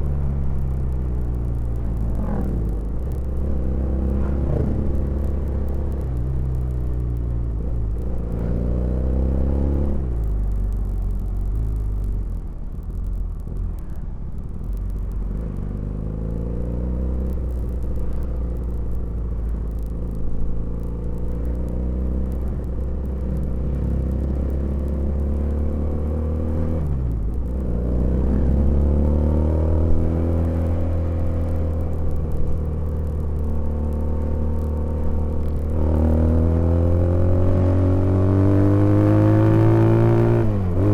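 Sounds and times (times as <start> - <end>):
motorcycle engine revving: 14.7 - 40.9.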